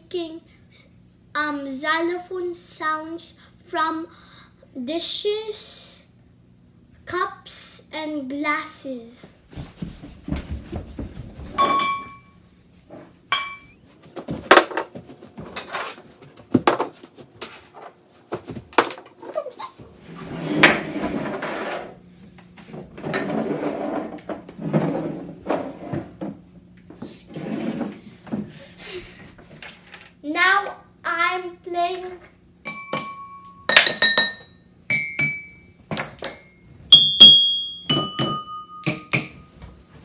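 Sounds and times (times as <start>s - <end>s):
dishes and glasses clinking: 11.6s - 12.3s, 13.3s - 13.8s, 15.6s - 16.0s, 23.1s - 23.6s, 32.7s - 39.7s
dishes clattering: 11.6s - 12.3s, 13.3s - 14.8s, 23.0s - 23.7s, 32.7s - 36.6s, 37.2s - 39.7s.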